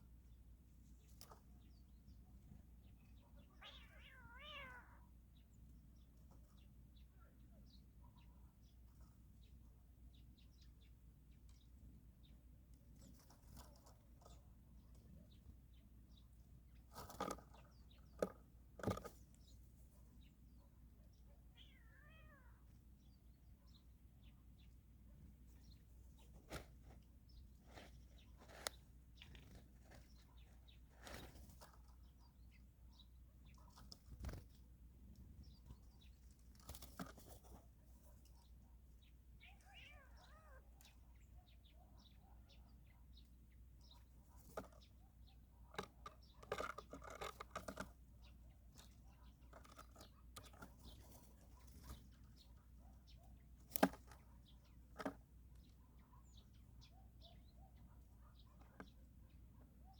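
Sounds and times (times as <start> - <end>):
faint wavering animal calls: 39.4 - 43.0.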